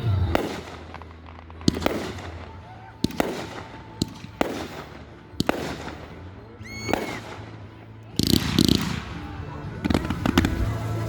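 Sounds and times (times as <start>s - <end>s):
crackling firework bursts: 0.0s - 11.0s
whistling firework rising: 6.6s - 7.4s.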